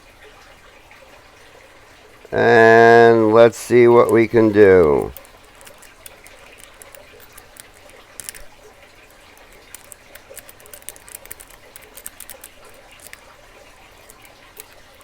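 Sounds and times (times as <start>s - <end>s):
lock picking metallic clicks: 3.9s - 15.0s.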